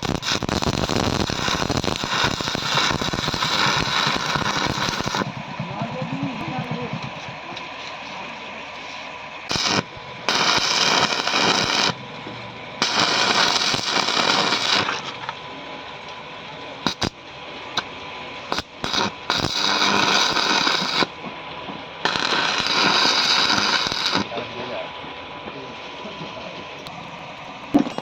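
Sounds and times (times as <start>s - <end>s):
arc welding crackling hiss: 0.0s - 5.4s, 9.5s - 12.0s, 12.8s - 15.3s, 16.8s - 17.2s, 18.5s - 21.2s, 22.0s - 24.5s.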